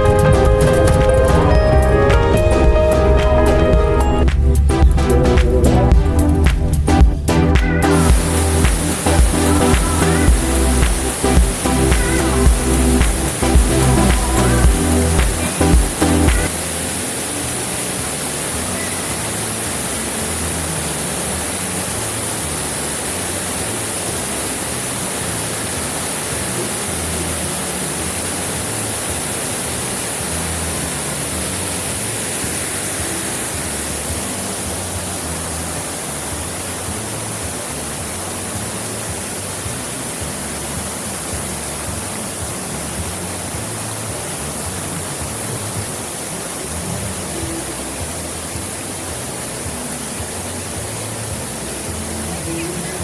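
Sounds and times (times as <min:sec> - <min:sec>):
waterfall rushing: 0:00.0 - 0:53.0.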